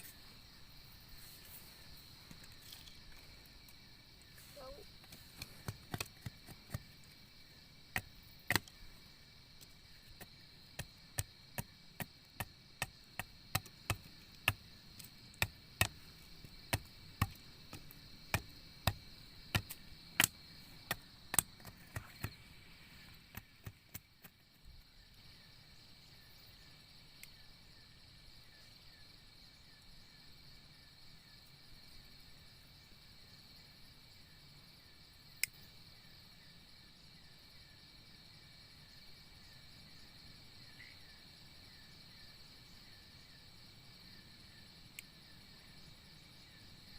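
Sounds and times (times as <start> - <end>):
crickets chirping: 0.0 - 46.9
wood chopping strikes: 5.0 - 7.0, 8.0 - 8.8, 10.2 - 22.4, 23.3 - 24.4.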